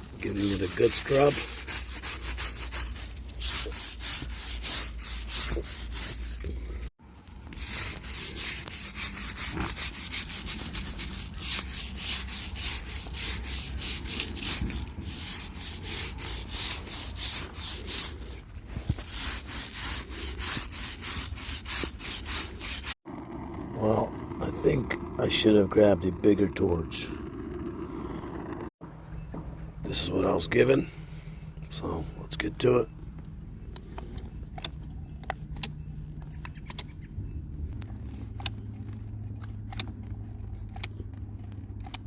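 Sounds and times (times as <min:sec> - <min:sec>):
brush scrubbing concrete: 0:00.0 - 0:23.0.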